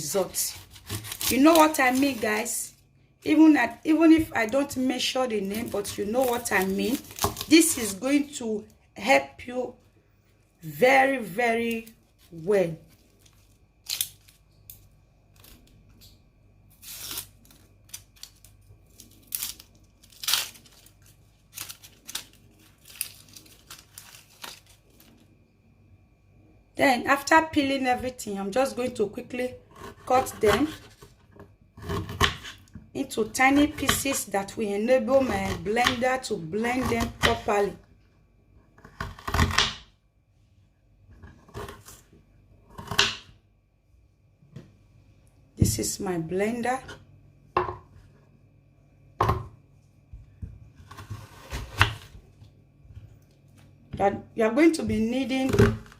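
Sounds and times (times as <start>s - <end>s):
onion skin tearing: 0.2s - 2.5s, 5.4s - 8.0s, 11.7s - 15.8s, 16.7s - 25.2s.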